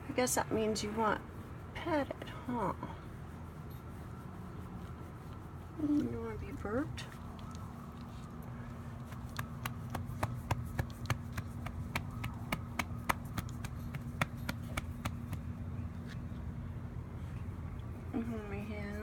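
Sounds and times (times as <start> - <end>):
steady low hum: 0.0 - 19.0
hand patting animal's back: 9.0 - 15.6.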